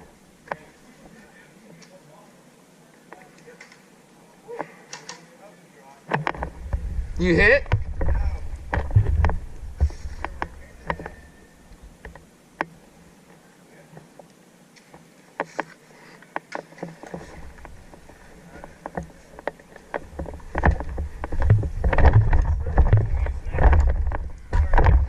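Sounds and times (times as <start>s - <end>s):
microphone handling noise: 6.2s - 11.2s, 16.8s - 25.0s
wind rumble: 6.4s - 10.8s, 20.0s - 25.0s.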